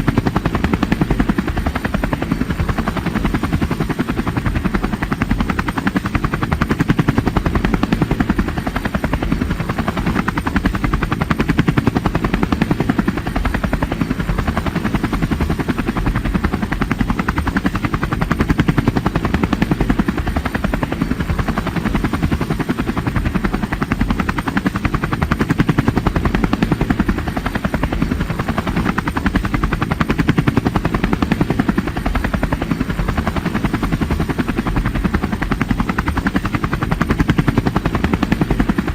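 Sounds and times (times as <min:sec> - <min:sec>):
helicopter rotor chop: 0:00.0 - 0:38.9.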